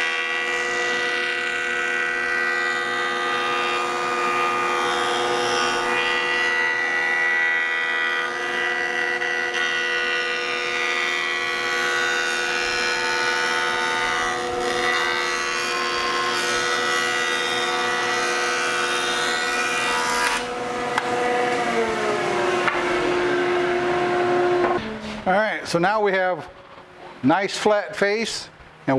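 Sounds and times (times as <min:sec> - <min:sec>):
cutterhead planing a board: 0:00.0 - 0:25.2
jointer machine whine: 0:00.0 - 0:25.3
motor spinning down: 0:20.3 - 0:25.0.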